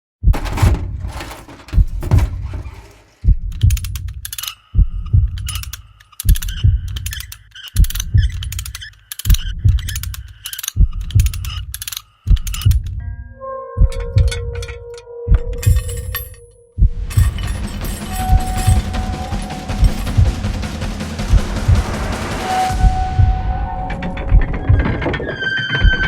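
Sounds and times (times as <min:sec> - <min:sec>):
heavy bass thumps: 0:00.2 - 0:03.9, 0:06.3 - 0:07.0, 0:09.3 - 0:10.0, 0:16.8 - 0:25.1.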